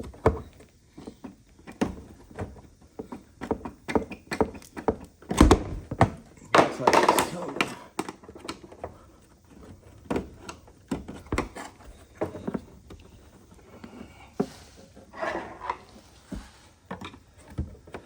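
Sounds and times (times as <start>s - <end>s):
metal scrape: 15.1s - 16.1s.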